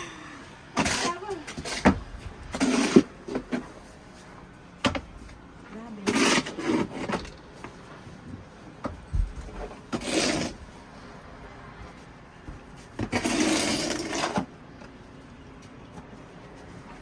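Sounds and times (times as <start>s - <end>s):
snow shovel scraping snow: 0.8s - 3.9s, 5.9s - 7.3s, 9.9s - 10.6s, 13.0s - 14.5s.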